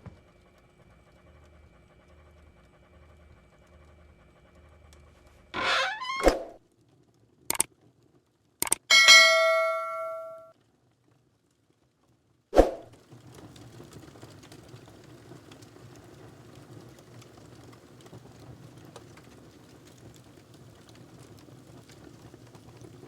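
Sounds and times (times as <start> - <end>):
sharp clicks: 8.6 - 8.9
bell-like chime: 8.9 - 10.4.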